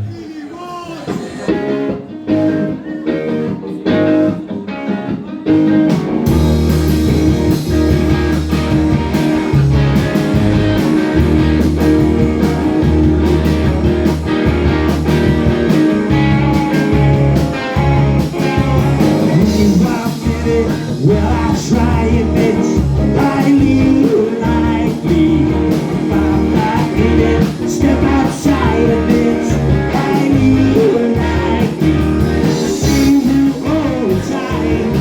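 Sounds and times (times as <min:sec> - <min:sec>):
electric guitar: 0:01.0 - 0:35.0
bass and drums beat: 0:05.7 - 0:35.0.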